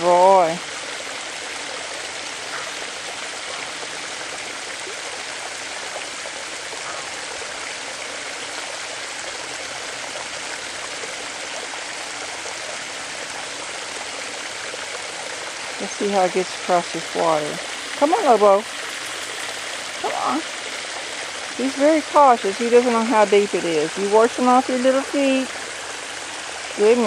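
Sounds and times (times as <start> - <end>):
water rushing over spillway: 0.0 - 27.0.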